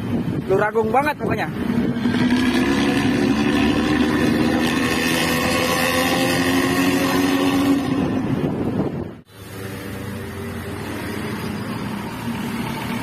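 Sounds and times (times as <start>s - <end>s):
raspy bus exhaust: 1.6s - 13.0s.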